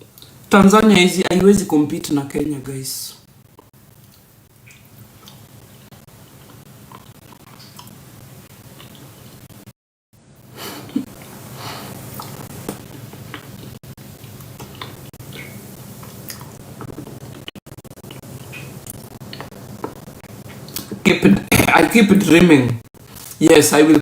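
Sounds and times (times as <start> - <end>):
person chewing: 3.6 - 5.4, 6.4 - 8.0, 10.8 - 16.6, 18.5 - 19.5.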